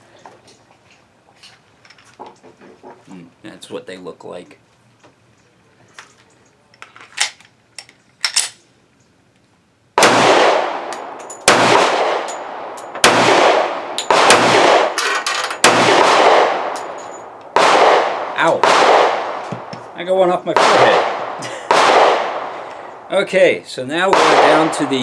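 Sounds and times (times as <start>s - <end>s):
pistol shots: 10.0s - 15.0s, 15.6s - 23.1s, 24.1s - 25.0s.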